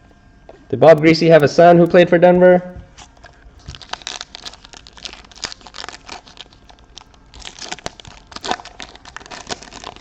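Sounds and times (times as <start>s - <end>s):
foil wrapper crinkling and tearing: 3.0s - 10.0s.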